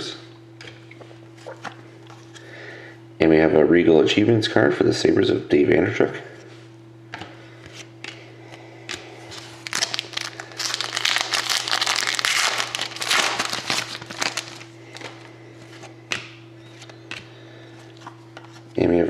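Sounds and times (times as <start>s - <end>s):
plastic and card crinkling: 9.3s - 15.9s.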